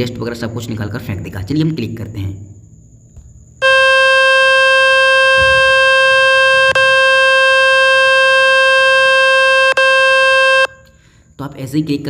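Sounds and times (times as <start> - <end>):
loud steady buzzing tone: 3.2 - 11.3.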